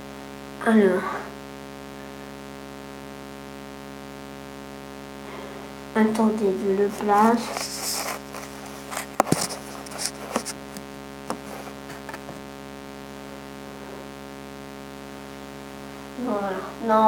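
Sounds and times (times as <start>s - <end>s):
steady electrical hum: 0.0s - 17.0s
phone handling knocks and clicks: 11.2s - 12.4s.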